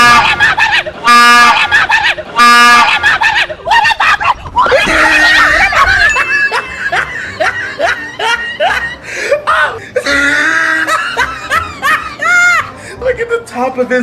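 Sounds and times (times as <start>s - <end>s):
person screaming: 9.5s - 10.9s.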